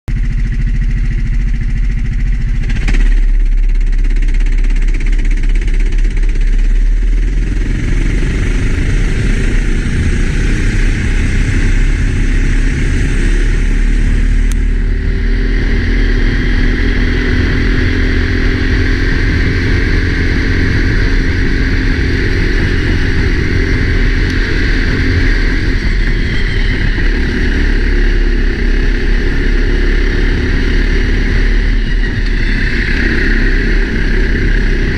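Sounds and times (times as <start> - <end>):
kart engine running hard: 0.1 - 34.9
wind rumble on microphone: 1.0 - 34.9.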